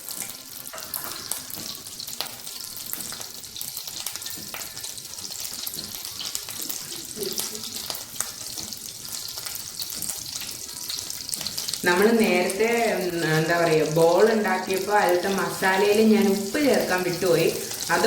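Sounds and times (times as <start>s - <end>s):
butter sizzling in a frying pan: 0.0s - 18.0s.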